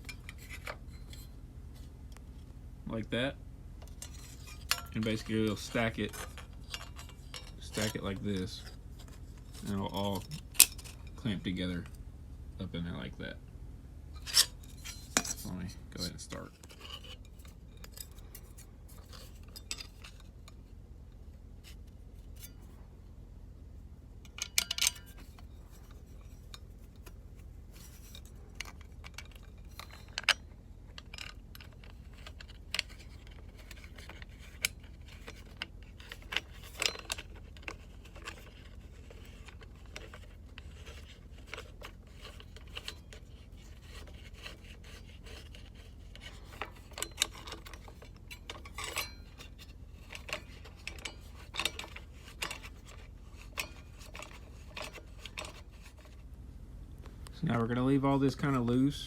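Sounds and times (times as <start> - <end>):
steady low hum: 0.0 - 59.0
metallic clicks and clinks: 24.2 - 27.2.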